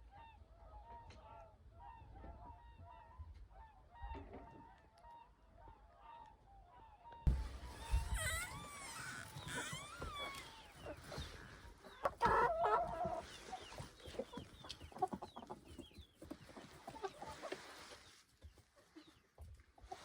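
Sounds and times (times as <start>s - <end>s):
chickens clucking: 7.3s - 20.0s
chicks peeping: 7.3s - 20.0s
loud drawn-out chicken call: 7.4s - 10.8s.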